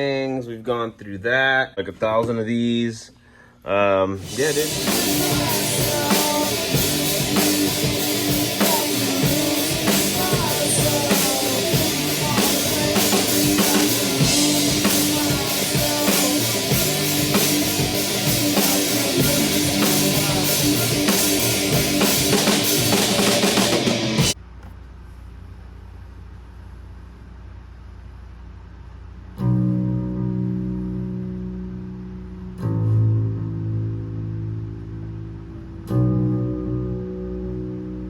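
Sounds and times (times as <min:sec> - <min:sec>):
drum kit beat: 0:04.2 - 0:24.4
rock band playing: 0:04.2 - 0:24.4.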